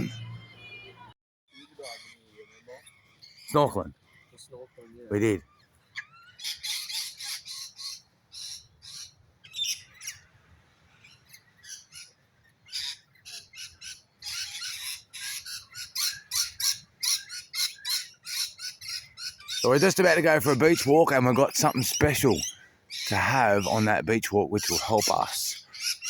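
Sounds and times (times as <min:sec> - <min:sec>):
birds squawking: 0:01.5 - 0:10.3, 0:11.0 - 0:26.0.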